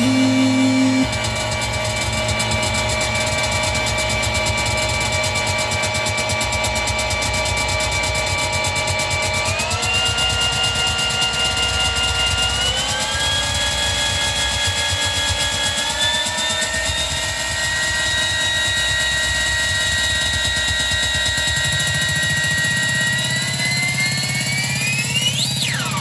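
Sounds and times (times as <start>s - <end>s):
low synth pulse: 0.0s - 7.2s
distorted synthesizer drone: 0.0s - 7.7s.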